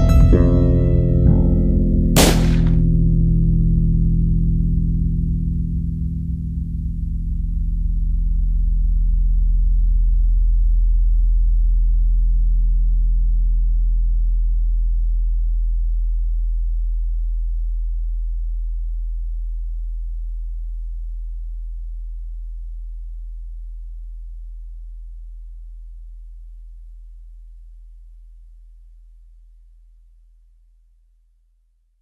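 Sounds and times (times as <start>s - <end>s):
deep bass drone: 0.3s - 15.1s.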